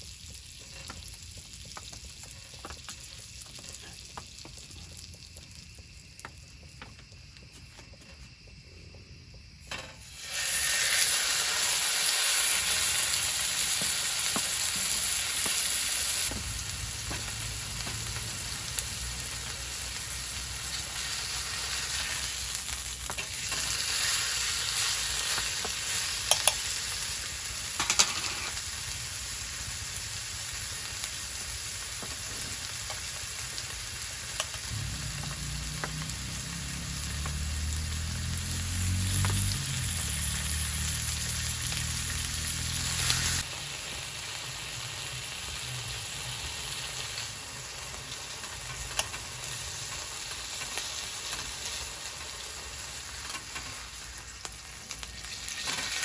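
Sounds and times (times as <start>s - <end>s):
food sizzling on a grill: 0.0s - 8.4s, 9.4s - 56.0s
low droning hum: 34.7s - 38.5s.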